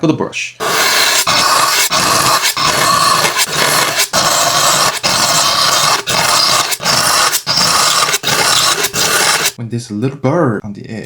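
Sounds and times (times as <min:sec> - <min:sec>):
knife grinding through sharpener: 0:00.6 - 0:09.6.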